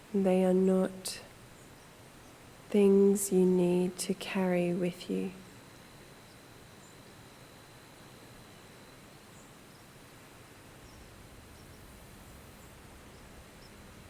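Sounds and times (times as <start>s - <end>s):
rain hissing: 10.6s - 14.0s.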